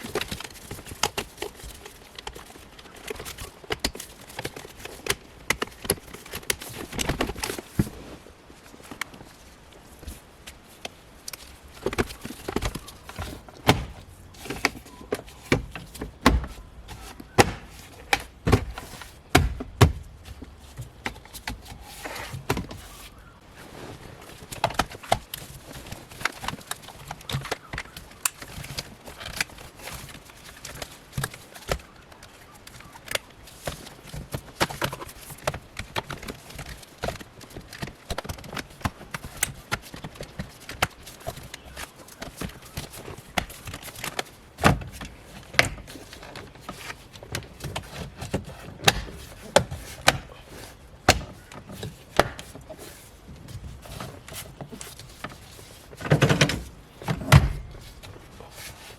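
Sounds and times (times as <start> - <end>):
plastic trim panels knocking and clicking: 11.8 - 21.7, 33.1 - 52.6.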